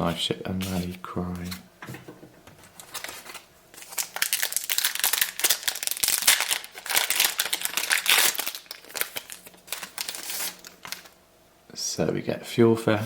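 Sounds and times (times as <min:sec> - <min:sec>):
wrapper tearing and crinkling: 0:02.8 - 0:11.2.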